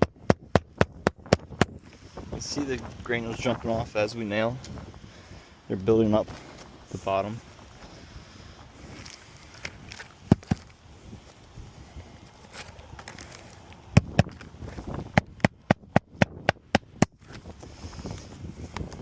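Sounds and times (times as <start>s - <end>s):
hammer driving nails into shingle: 0.0s - 1.8s, 10.2s - 10.7s, 14.0s - 14.4s, 15.1s - 17.2s.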